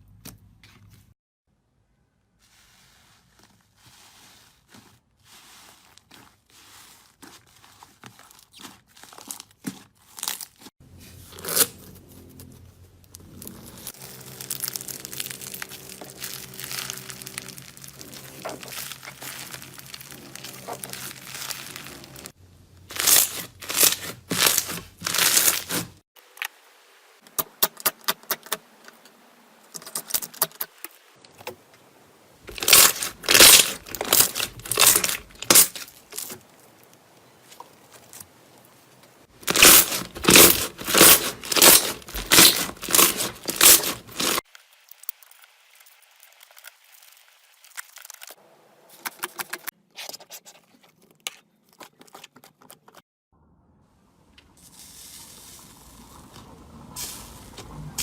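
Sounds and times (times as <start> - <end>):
slime crackling and crunching: 3.8 - 11.7, 13.1 - 26.0, 32.5 - 36.8, 39.3 - 48.4.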